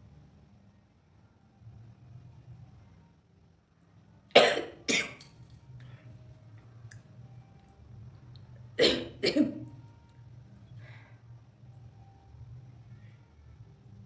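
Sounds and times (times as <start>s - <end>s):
person coughing: 4.4s - 5.2s, 8.8s - 9.6s.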